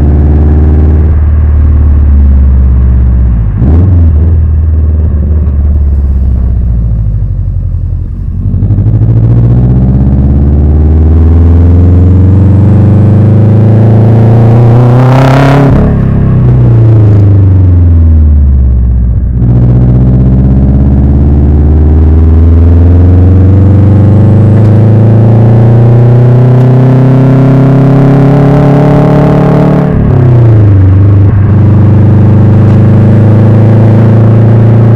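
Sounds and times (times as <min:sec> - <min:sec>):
turbo rushing sound: 0:00.0 - 0:15.0
car engine revving: 0:00.0 - 0:34.9.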